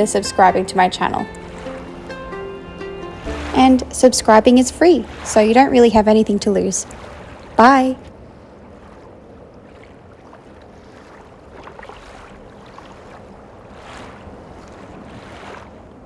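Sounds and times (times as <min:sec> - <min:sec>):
wind noise on microphone: 0:00.0 - 0:09.7
lake water lapping: 0:00.0 - 0:16.0.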